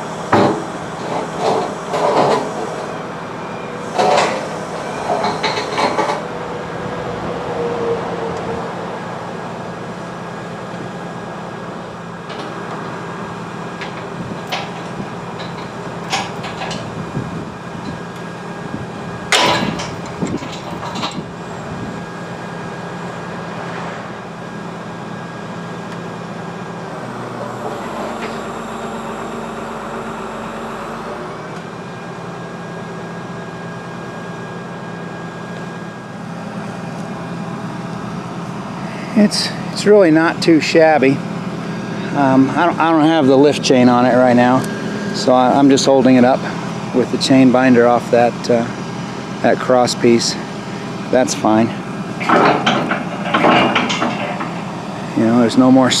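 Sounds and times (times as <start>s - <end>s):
excavator engine running: 0.0s - 56.0s
sharp metal clanks: 19.3s - 21.2s, 52.2s - 54.7s.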